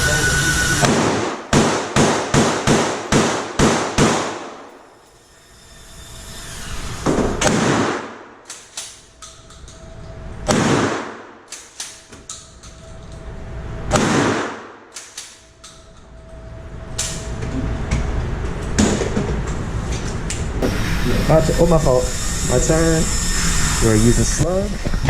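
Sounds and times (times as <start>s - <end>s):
sharp cracks: 0.8s - 4.8s
shotgun blasts indoors: 0.8s - 5.0s, 7.0s - 9.4s, 10.4s - 12.6s, 13.8s - 15.8s.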